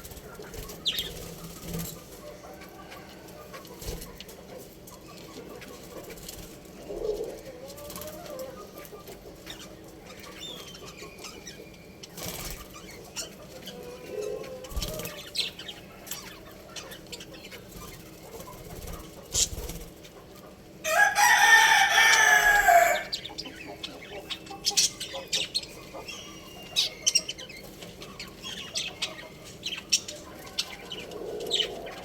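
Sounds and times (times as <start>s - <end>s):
budgerigars chirping: 0.0s - 4.3s, 8.6s - 20.3s, 21.0s - 32.0s
wing flutters: 12.1s - 12.9s, 17.7s - 20.0s
rooster crowing: 20.8s - 23.2s.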